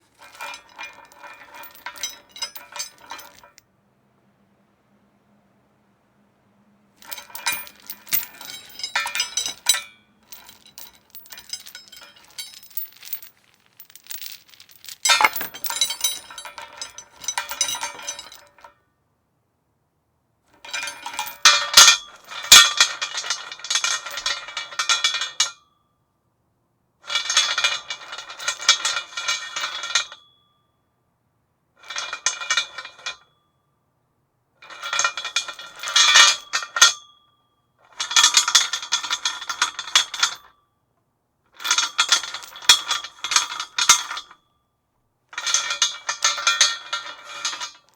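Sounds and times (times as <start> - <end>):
metal chain rattling against post: 0.2 - 3.6, 7.0 - 18.6.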